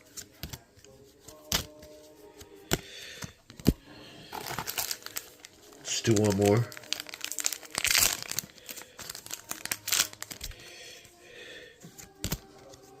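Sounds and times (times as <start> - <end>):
foil wrapper crinkling and tearing: 4.3 - 10.6.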